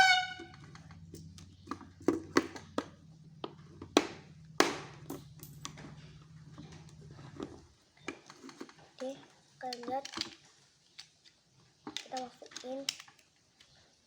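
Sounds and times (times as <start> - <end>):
plastic bricks clicking together: 7.4 - 13.8.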